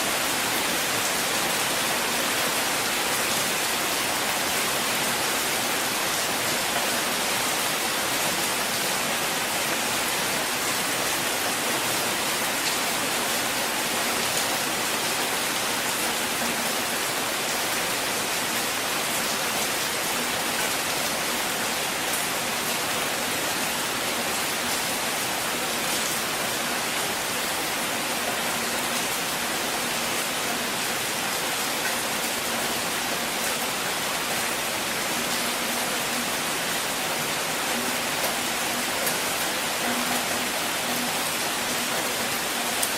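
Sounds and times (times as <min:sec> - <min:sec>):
steady rain hiss: 0:00.0 - 0:42.9.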